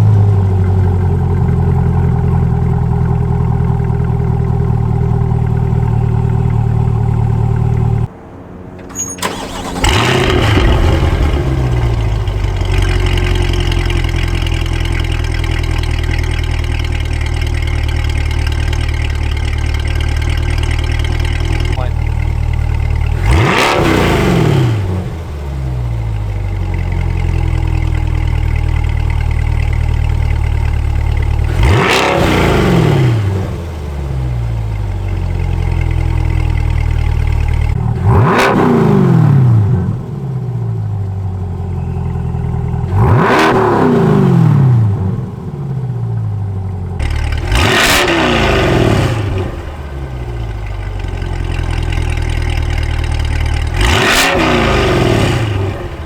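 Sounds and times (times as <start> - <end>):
car engine idling and revving: 0.0 - 56.0.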